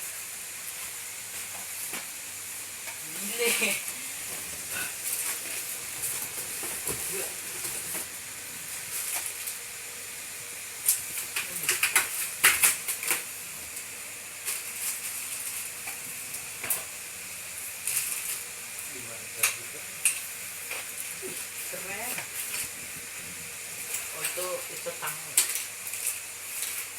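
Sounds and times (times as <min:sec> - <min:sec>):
steady hiss: 0:00.0 - 0:26.9
packaging rustling and crackling: 0:03.4 - 0:09.7, 0:10.8 - 0:16.9.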